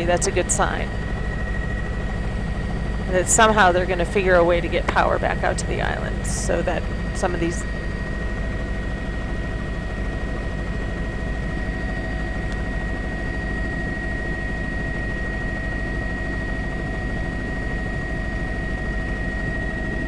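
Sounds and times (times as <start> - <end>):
light aircraft droning: 0.0 - 20.0
thin steady whine: 0.0 - 20.0.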